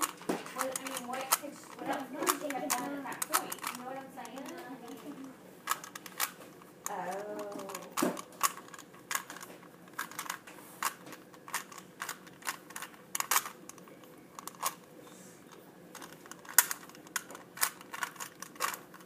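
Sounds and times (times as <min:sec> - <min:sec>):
puzzle cube clicking: 0:00.0 - 0:14.9, 0:15.9 - 0:19.0.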